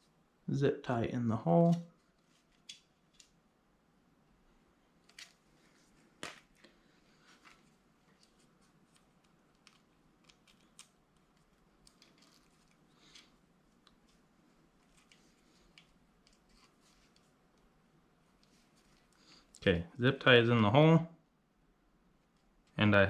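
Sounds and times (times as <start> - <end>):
plastic zip tie clicking and scraping: 8.2 - 14.1.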